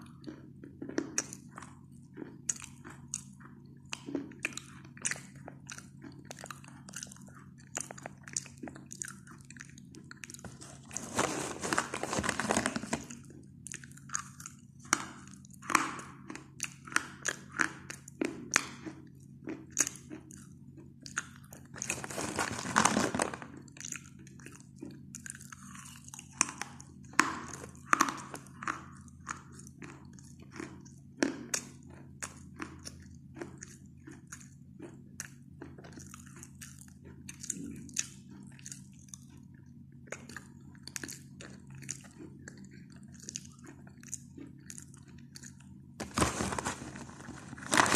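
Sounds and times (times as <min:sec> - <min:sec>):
person crunching chalk: 0:10.4 - 0:13.2, 0:21.8 - 0:23.6, 0:46.0 - 0:47.9.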